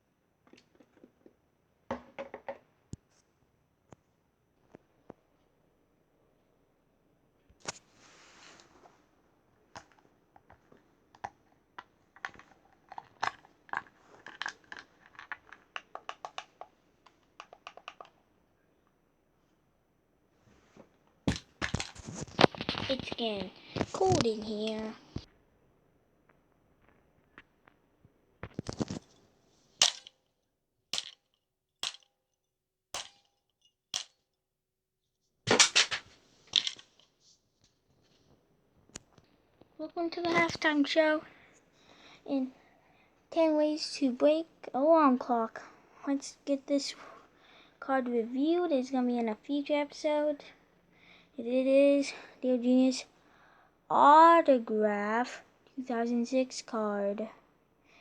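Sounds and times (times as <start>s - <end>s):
alarm clock breaking cracks: 29.8s - 30.1s, 31.0s - 31.2s, 31.8s - 32.1s, 33.0s - 33.3s.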